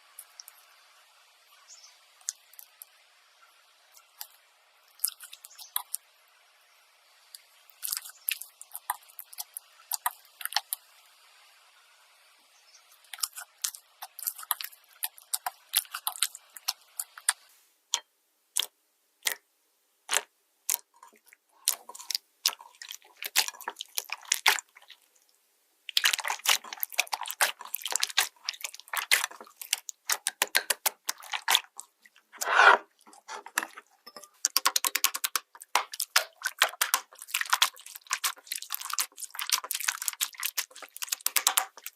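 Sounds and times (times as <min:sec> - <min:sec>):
slime clicking and popping: 0:18.6 - 0:19.4, 0:20.1 - 0:20.9, 0:25.9 - 0:31.8, 0:34.5 - 0:41.9.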